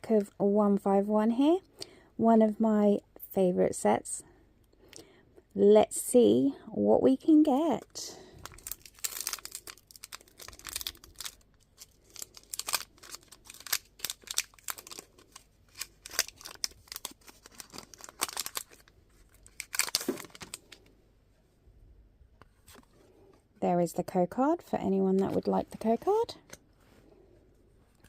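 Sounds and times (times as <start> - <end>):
foil wrapper crinkling and tearing: 8.3 - 20.8.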